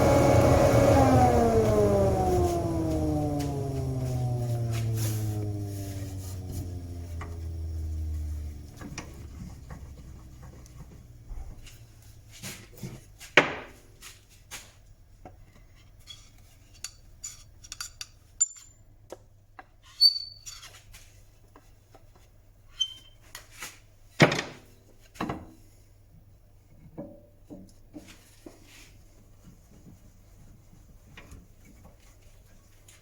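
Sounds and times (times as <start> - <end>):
faint low hum: 0.0 - 13.0
tools and wood knocking and clinking: 16.8 - 18.8.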